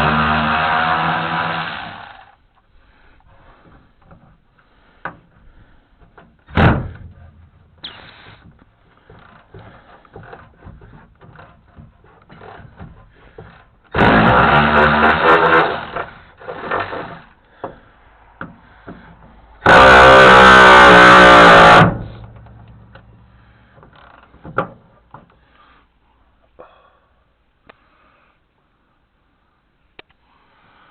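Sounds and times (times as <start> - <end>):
cordless impact tool bursts: 0.0 - 2.4, 13.4 - 17.3, 19.6 - 22.5.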